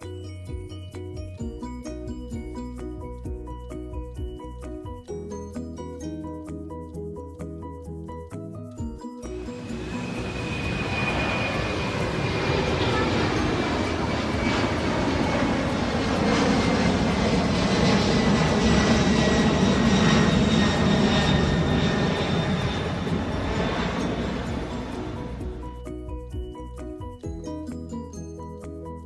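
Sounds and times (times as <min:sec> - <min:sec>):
jet engine rush with high whine: 0:09.4 - 0:25.8.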